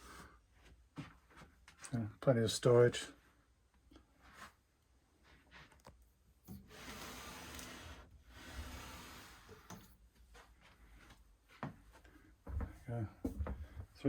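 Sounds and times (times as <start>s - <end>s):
wood scraping against wood: 6.6s - 9.8s.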